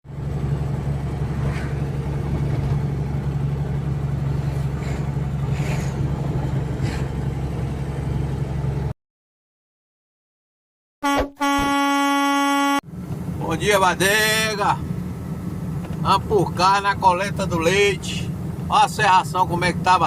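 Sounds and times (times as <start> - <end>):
vehicle engine running: 0.0 - 8.9.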